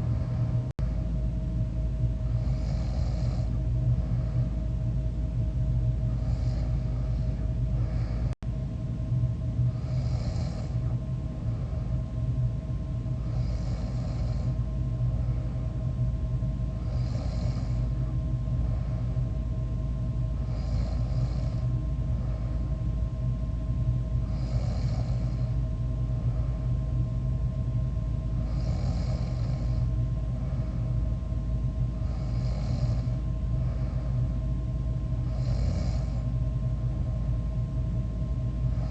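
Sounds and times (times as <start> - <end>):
steady low hum: 0.0 - 38.9
person snoring: 2.4 - 4.3, 6.1 - 8.4, 9.7 - 10.9, 13.2 - 14.6, 16.8 - 17.9, 20.4 - 21.7, 24.2 - 25.6, 28.4 - 29.9, 32.0 - 34.0, 35.2 - 36.2, 38.7 - 38.9.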